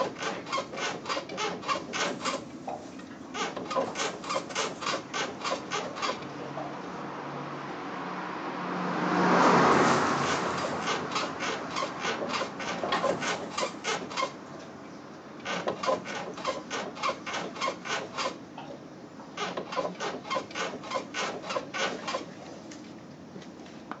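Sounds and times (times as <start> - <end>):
car suspension creaking: 0.0 - 6.4, 9.4 - 14.5, 15.4 - 18.7, 19.3 - 22.3.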